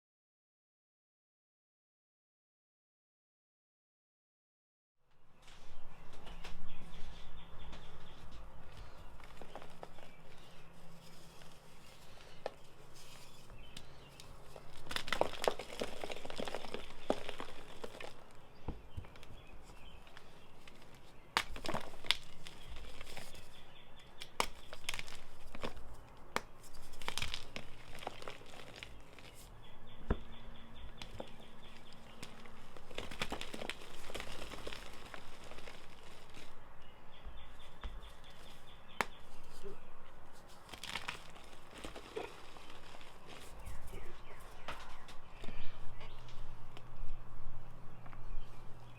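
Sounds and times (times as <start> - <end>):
blocks crunching and cracking: 8.8 - 29.5, 30.1 - 36.6, 37.4 - 45.6.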